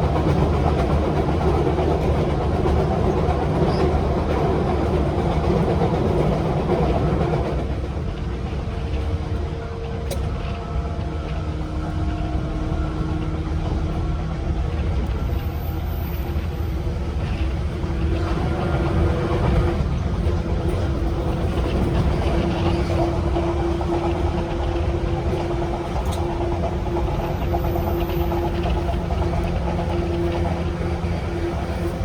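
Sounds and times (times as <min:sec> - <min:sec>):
wheels rumbling on rail: 0:00.0 - 0:32.0
electric train motor hum: 0:07.7 - 0:32.0.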